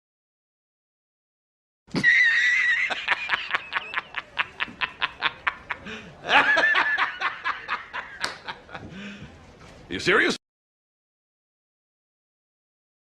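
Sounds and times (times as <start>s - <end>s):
high-pitched laugh: 1.9s - 8.9s.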